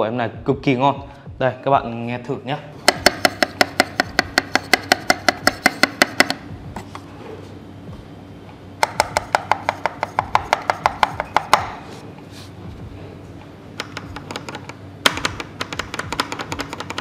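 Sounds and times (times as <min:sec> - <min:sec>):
mechanical keyboard keys clacking: 0:13.8 - 0:17.0.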